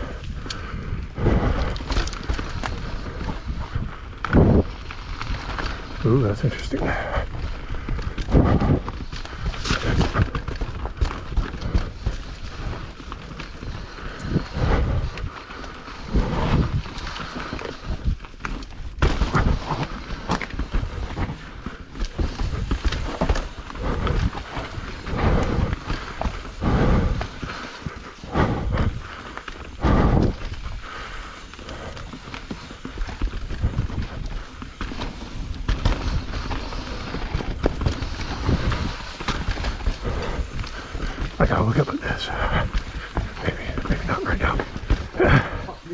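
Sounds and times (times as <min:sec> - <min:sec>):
bike tyres running over dirt: 0:00.0 - 0:45.9
wind rumbling on microphone: 0:00.0 - 0:45.9
bike knocks and rattles: 0:15.9 - 0:30.6, 0:31.3 - 0:41.4.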